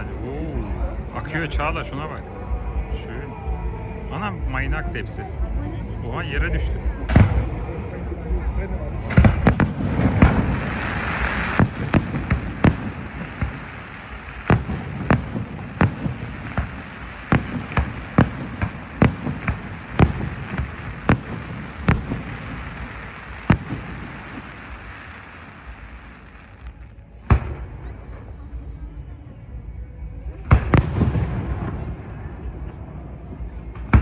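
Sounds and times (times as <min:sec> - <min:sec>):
fireworks bangs: 0:09.0 - 0:28.2, 0:30.4 - 0:34.0
fireworks crackling hiss: 0:09.1 - 0:28.0.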